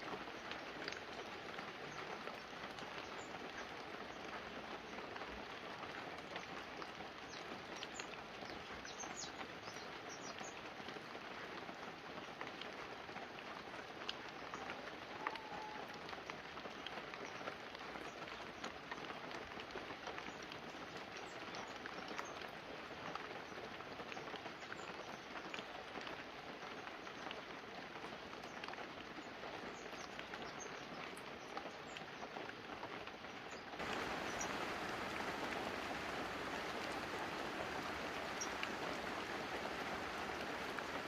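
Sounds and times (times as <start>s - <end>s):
light rain on leaves and roof: 0.0s - 41.0s
water drops ticking: 33.8s - 41.0s.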